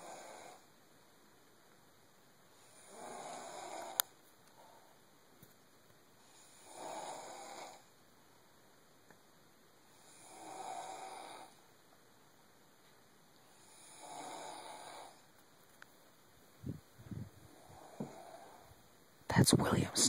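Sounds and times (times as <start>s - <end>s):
person snoring: 2.7s - 4.0s, 6.4s - 7.9s, 10.0s - 11.6s, 13.6s - 15.2s.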